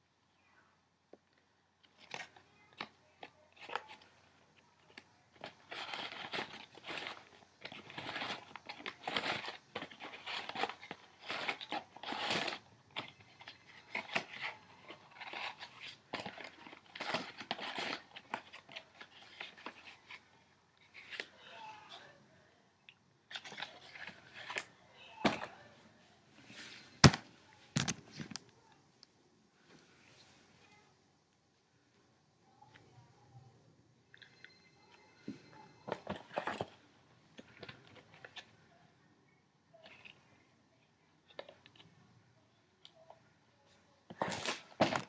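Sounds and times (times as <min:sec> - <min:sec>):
crinkly material rustling: 0:01.8 - 0:22.2, 0:35.1 - 0:38.8, 0:42.9 - 0:45.0.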